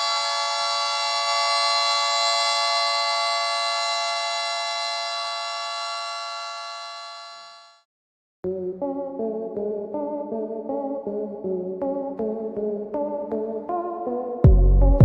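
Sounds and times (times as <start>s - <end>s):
warning siren chord: 0.0s - 7.8s.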